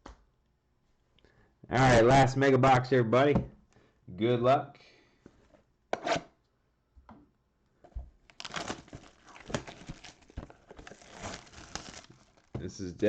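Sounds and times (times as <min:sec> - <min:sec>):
plastic wrapping crinkling: 0:08.2 - 0:12.6
plastic wrapping ripping: 0:08.3 - 0:12.6.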